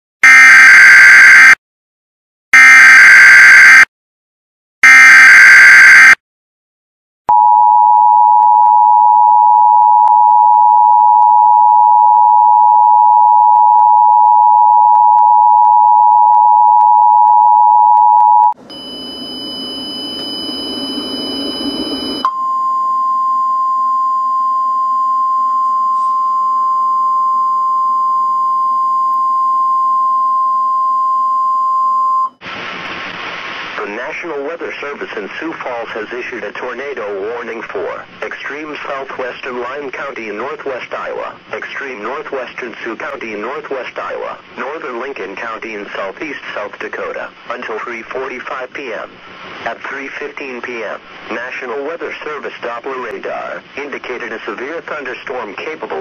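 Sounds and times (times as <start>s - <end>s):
steady warning alarm tone: 4.8s - 6.2s, 18.2s - 23.0s
two-tone attention signal: 7.3s - 28.2s.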